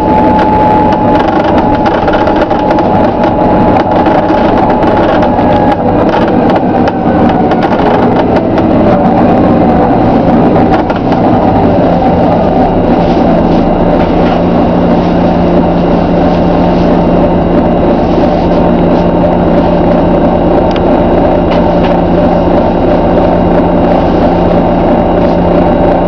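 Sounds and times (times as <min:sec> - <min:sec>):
bus diesel engine running: 0:00.0 - 0:26.0
steady low drone: 0:00.0 - 0:26.0
bus body creaks and clicks: 0:00.4 - 0:09.0, 0:10.2 - 0:11.4.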